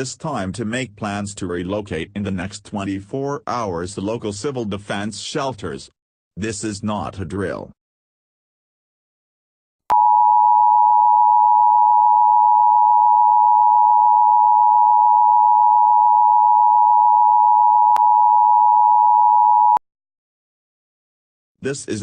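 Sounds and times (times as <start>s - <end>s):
two-tone electronic beep: 9.9s - 19.8s.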